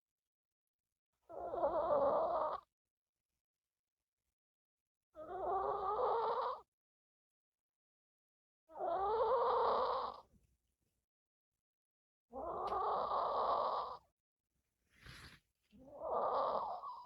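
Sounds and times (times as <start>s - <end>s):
dog snoring: 1.3s - 2.7s, 5.2s - 6.7s, 8.7s - 10.3s, 12.4s - 14.0s, 15.9s - 17.0s.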